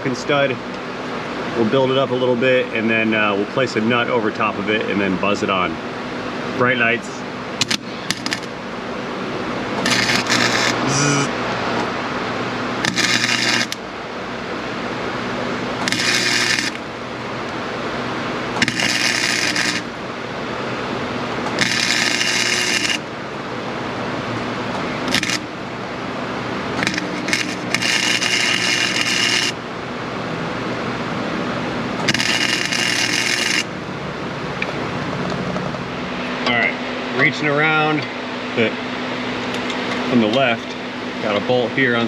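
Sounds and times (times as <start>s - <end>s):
steady low hum: 0.0s - 42.0s
arc welder crackling: 7.6s - 8.9s, 9.6s - 11.9s, 12.6s - 14.2s, 15.2s - 20.2s, 21.2s - 23.3s, 24.2s - 30.0s, 30.8s - 35.9s.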